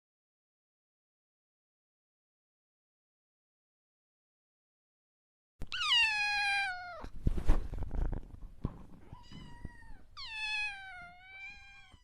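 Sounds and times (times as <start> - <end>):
cat meowing: 5.6 - 7.1, 9.1 - 12.0
thumps and rustling: 7.1 - 10.0.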